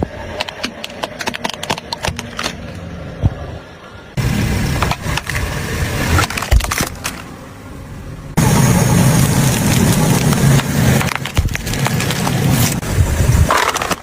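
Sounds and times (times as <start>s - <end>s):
car engine rumbling: 0.0s - 14.0s
plastic cracking and crunching: 0.3s - 2.8s, 6.2s - 7.3s, 9.1s - 12.8s, 13.4s - 14.0s.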